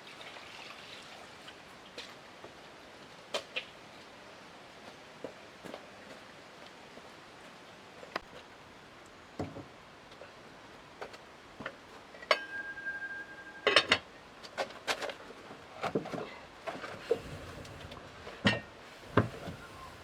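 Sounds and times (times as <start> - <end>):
short clear ringing tone: 12.3 - 13.9.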